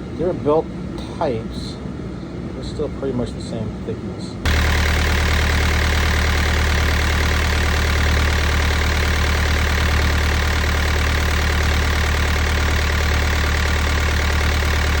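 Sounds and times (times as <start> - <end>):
boat engine idling: 4.5 - 15.0.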